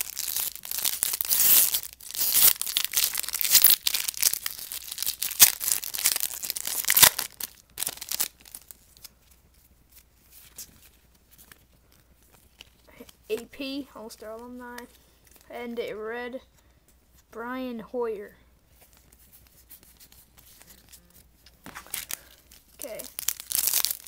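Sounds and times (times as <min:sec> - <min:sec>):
foil wrapper tearing and crinkling: 0:00.0 - 0:09.1, 0:21.6 - 0:24.0
cards rustling: 0:00.0 - 0:13.5, 0:18.7 - 0:24.0.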